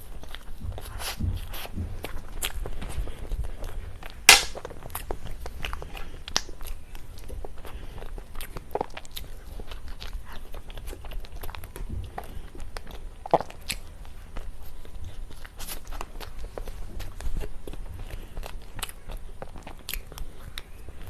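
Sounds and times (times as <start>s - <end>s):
person biting and chewing cake: 0.0s - 21.0s.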